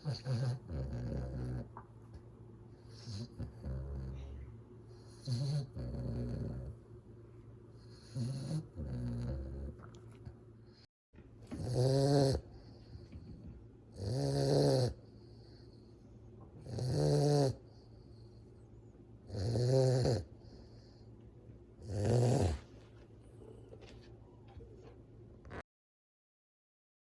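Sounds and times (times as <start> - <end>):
puppy snoring: 0.0 - 1.8, 2.8 - 6.8, 7.8 - 9.9, 11.5 - 15.7, 16.6 - 18.4, 19.2 - 21.0, 21.8 - 23.8.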